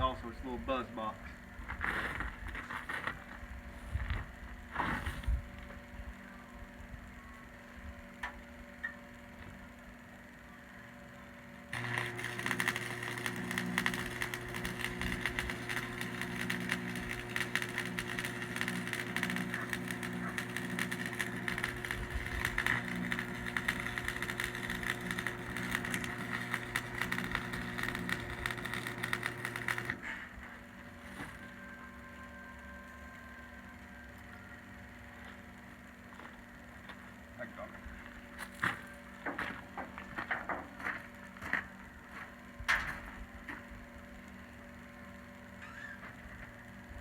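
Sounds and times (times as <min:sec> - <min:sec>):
transformer hum: 0:00.0 - 0:40.2
welding arc crackle: 0:11.7 - 0:30.0.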